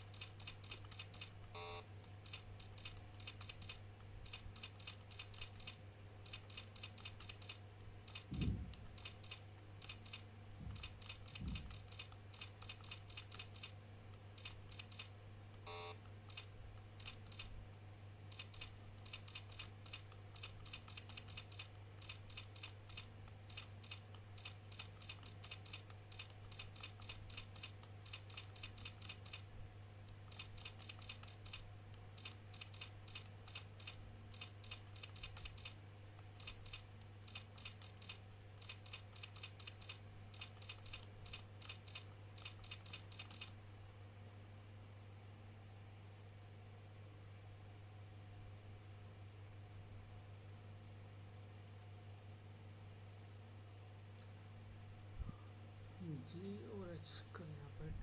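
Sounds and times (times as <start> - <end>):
fast keyboard typing: 0.0 - 13.8, 14.4 - 15.1, 15.7 - 17.5, 18.3 - 29.5, 30.2 - 35.8, 36.4 - 43.5
steady low hum: 0.0 - 58.0.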